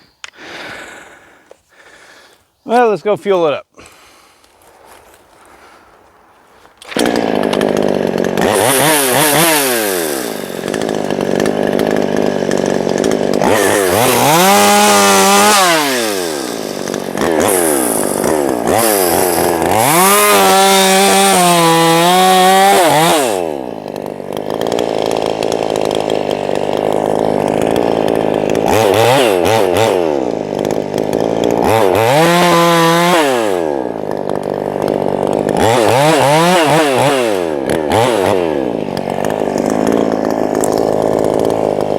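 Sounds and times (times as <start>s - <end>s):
chainsaw revving and idling: 6.7s - 41.9s.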